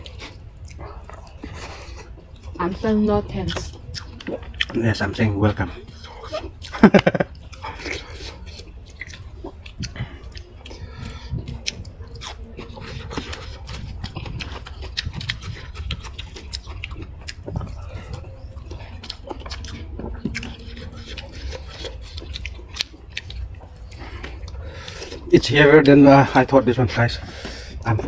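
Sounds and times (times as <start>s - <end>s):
people chewing: 0.0s - 28.0s
wet mouth clicks and smacks: 7.4s - 12.4s.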